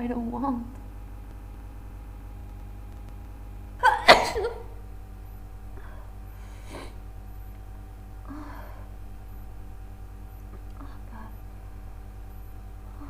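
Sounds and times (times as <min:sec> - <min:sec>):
woman sneezing: 0:03.8 - 0:04.7.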